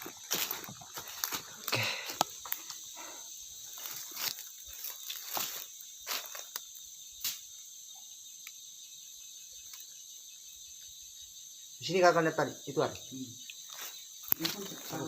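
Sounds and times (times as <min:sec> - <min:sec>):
footsteps on rock: 0:00.0 - 0:02.4
insects chirping: 0:00.0 - 0:15.0.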